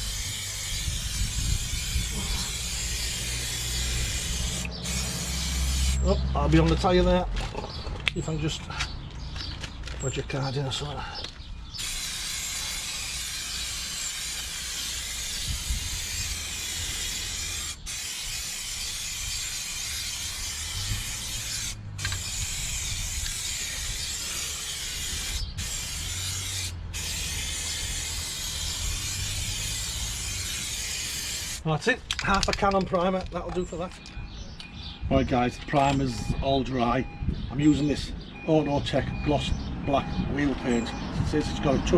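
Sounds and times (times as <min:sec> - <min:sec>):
aerosol can spraying: 0:00.0 - 0:06.1, 0:11.8 - 0:31.6.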